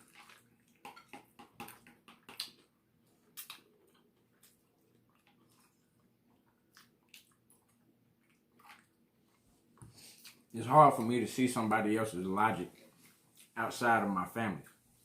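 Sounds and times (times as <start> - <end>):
person chewing and lip smacking: 0.1 - 9.0, 10.1 - 10.5.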